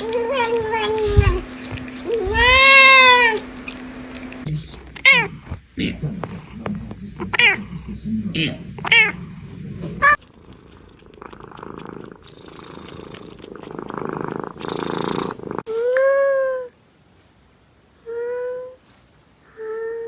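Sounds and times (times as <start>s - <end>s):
cat meowing: 0.0s - 3.8s, 5.0s - 5.4s, 7.2s - 7.6s, 8.8s - 9.2s, 10.0s - 10.2s
cat purring: 0.0s - 15.9s.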